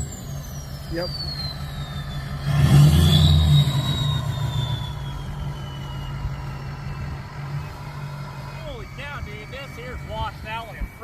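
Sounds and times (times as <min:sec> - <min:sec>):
diesel truck engine droning: 0:00.0 - 0:11.0
high falling whistle: 0:00.0 - 0:11.0.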